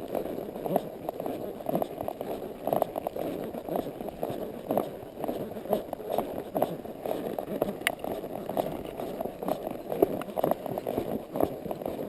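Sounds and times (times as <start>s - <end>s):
horse hooves thudding on a trail: 0.0s - 12.0s.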